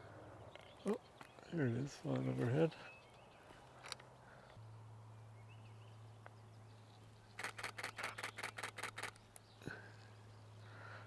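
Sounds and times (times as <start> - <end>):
camera shutter rapid burst: 7.4 - 9.2.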